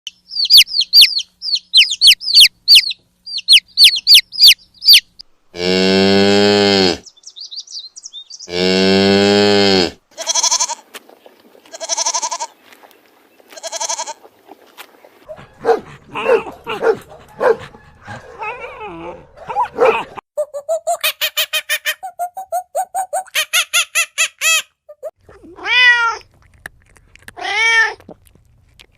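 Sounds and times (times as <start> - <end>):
bird chirps: 0.1 - 5.2, 7.0 - 8.6
cow mooing: 5.6 - 7.0, 8.5 - 10.5, 15.3 - 20.1
bleating calls: 8.4 - 10.9, 11.6 - 12.6, 13.5 - 14.2.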